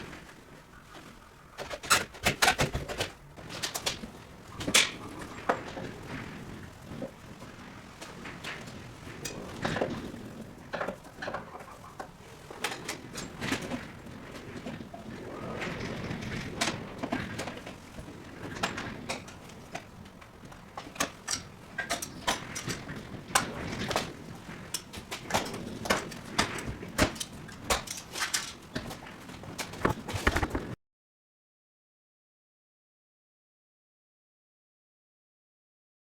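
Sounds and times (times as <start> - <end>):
knocks and clatter of dismantling: 15.6 - 30.8.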